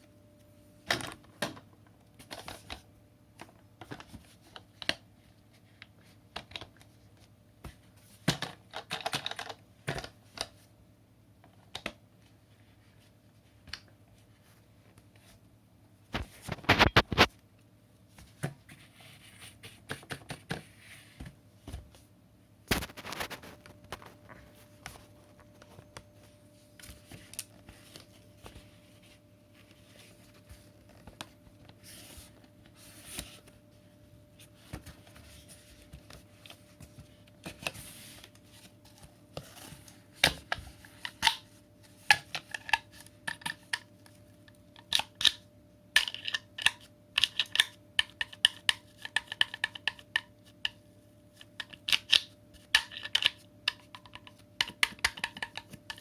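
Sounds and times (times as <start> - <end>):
plastic parts clicking and knocking: 8.2 - 10.6, 46.0 - 50.8, 51.4 - 56.0.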